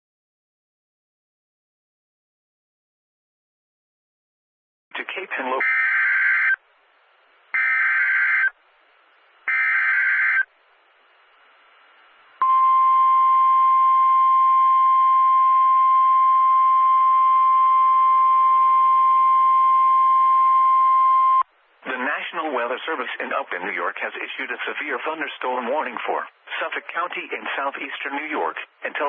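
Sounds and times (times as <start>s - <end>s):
steady alarm tone: 5.6s - 6.6s, 7.6s - 8.5s, 9.5s - 10.5s.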